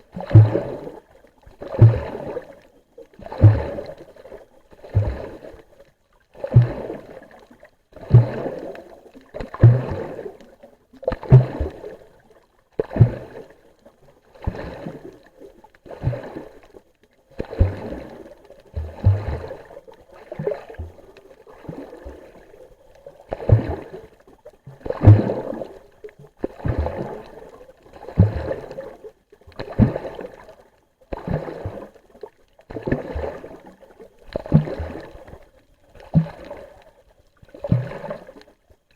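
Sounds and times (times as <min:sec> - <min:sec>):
water rushing and sloshing: 0:00.0 - 0:05.8, 0:06.4 - 0:12.2, 0:17.4 - 0:22.6, 0:23.2 - 0:24.2, 0:24.8 - 0:32.0, 0:32.6 - 0:38.5
low water thump: 0:00.2 - 0:00.8, 0:01.6 - 0:02.3, 0:03.3 - 0:03.9, 0:08.1 - 0:08.5, 0:09.4 - 0:10.1, 0:11.1 - 0:11.8, 0:18.8 - 0:19.6, 0:23.3 - 0:23.9, 0:24.7 - 0:25.6, 0:28.1 - 0:28.7, 0:34.3 - 0:35.4, 0:36.0 - 0:36.9, 0:37.5 - 0:38.4.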